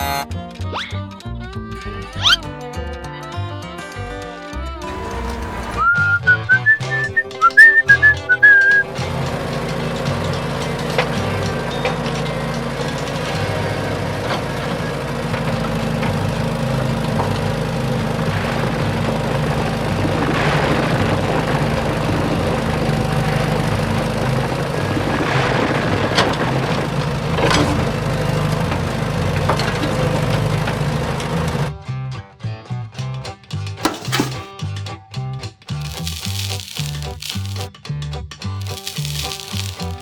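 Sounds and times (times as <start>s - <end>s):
engine running: 4.8s - 31.7s.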